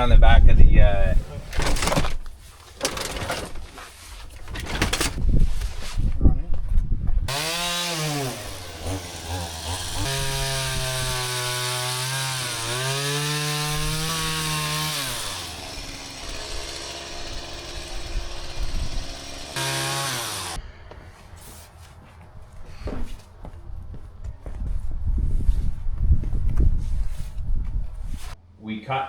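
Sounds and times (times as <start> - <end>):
chainsaw running at varying revs: 7.3 - 20.6.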